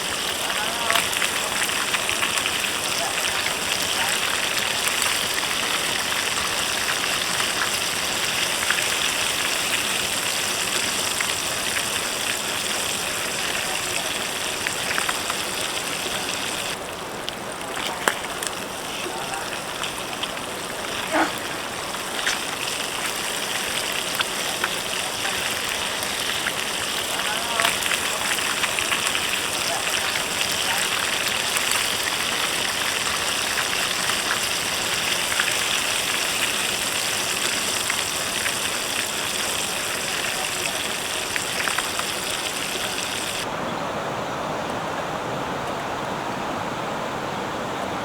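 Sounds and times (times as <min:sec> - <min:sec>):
river water flowing: 0:00.0 - 0:48.0.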